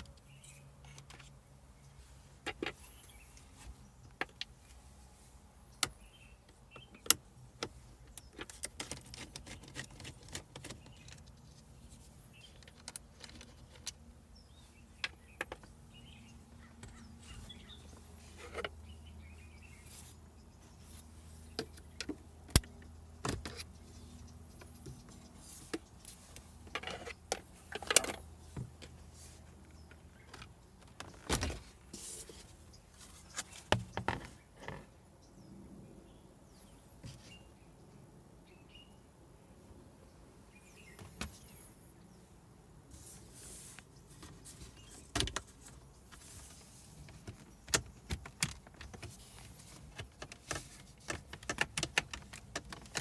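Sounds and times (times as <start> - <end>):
plastic trim clicking and rattling: 47.1 - 53.0.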